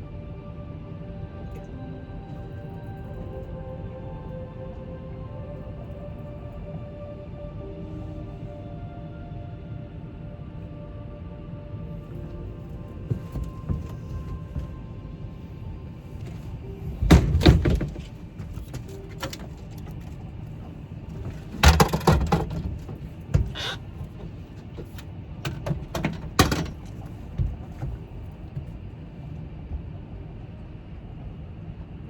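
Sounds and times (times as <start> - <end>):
loud knocks and clatters: 12.7 - 15.0, 16.2 - 28.7.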